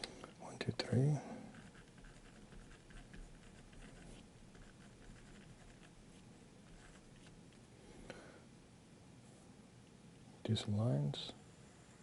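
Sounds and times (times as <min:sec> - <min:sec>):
pencil scratching on paper: 0:01.4 - 0:07.4.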